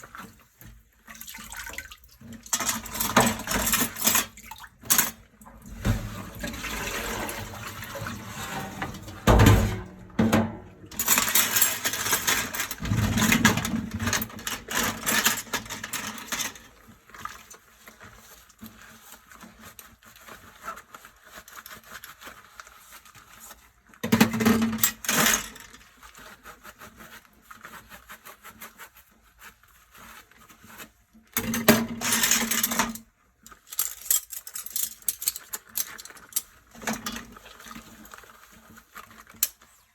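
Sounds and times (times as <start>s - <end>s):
tap water running: 1.1s - 13.6s
dishes scrubbing and clinking: 1.3s - 16.6s.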